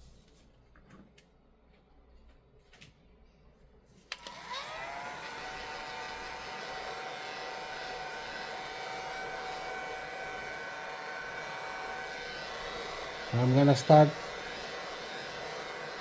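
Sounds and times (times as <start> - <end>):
heat gun fan whine and hiss: 4.1 - 16.0.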